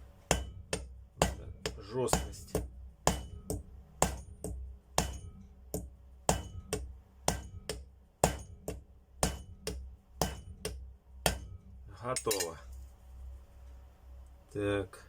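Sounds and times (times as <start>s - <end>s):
hammer tapping on metal: 0.3s - 11.6s, 12.2s - 12.6s.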